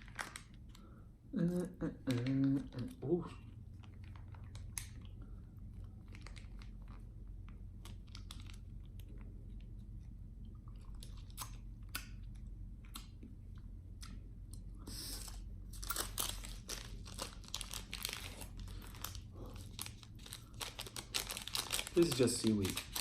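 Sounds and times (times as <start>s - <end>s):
plastic packet crinkling and tearing: 0.0s - 0.9s, 2.0s - 9.7s, 15.1s - 23.0s
wet squishing of noodles: 3.4s - 22.0s.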